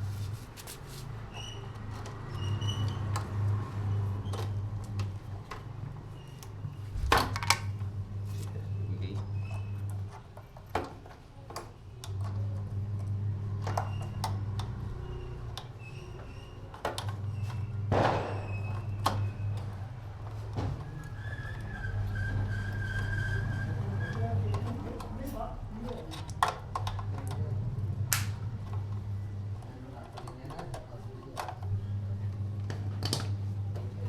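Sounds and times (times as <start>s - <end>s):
low hum: 6.9s - 8.0s.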